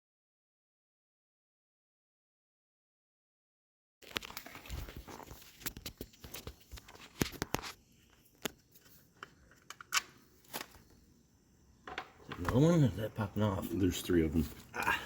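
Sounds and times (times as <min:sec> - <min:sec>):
clicks and knocks of tools: 0:08.4 - 0:10.8.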